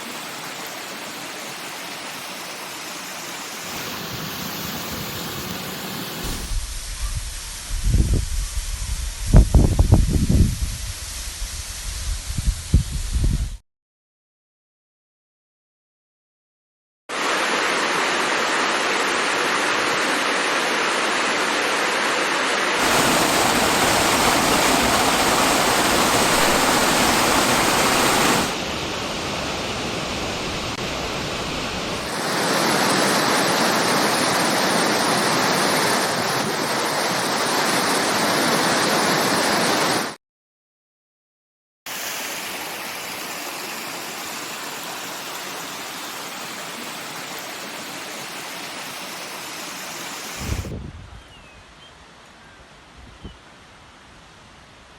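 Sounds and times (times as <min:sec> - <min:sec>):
waterfall roaring: 0:00.0 - 0:07.6, 0:17.1 - 0:40.2, 0:41.9 - 0:50.7.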